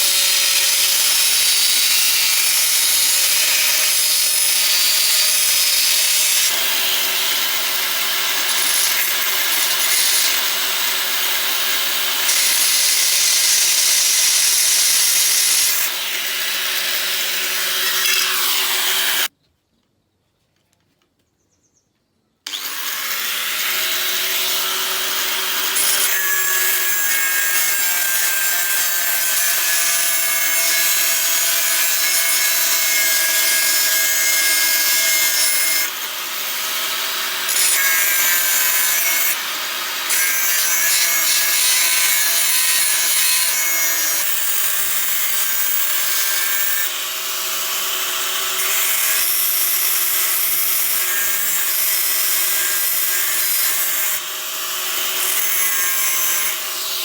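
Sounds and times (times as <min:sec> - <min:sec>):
power tool grinding: 0:00.0 - 0:19.3, 0:22.5 - 0:57.0.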